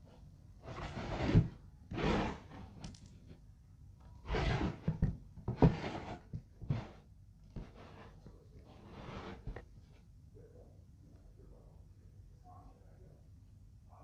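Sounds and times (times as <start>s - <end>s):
wood scraping: 0.6s - 2.9s, 4.3s - 7.0s, 7.6s - 9.7s.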